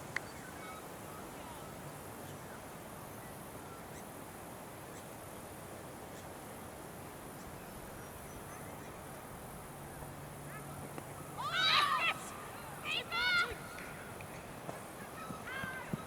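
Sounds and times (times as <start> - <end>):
steady background noise: 0.0 - 16.0.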